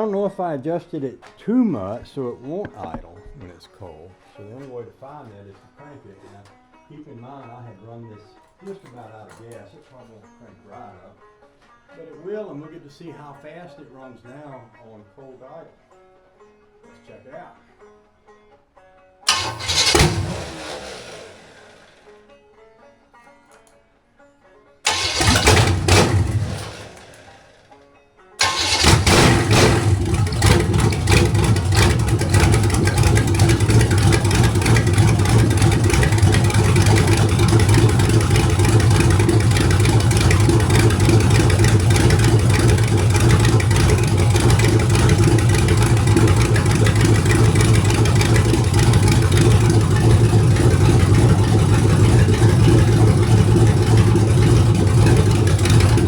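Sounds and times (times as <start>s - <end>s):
car engine starting and idling: 19.3s - 22.1s, 24.9s - 27.6s, 28.4s - 56.0s.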